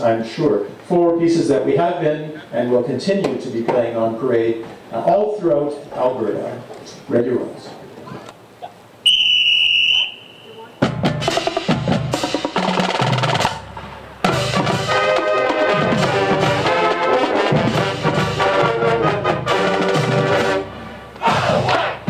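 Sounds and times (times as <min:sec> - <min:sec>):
brass section playing: 0:09.1 - 0:22.0
snare and bass drums: 0:10.8 - 0:20.6, 0:21.2 - 0:22.0.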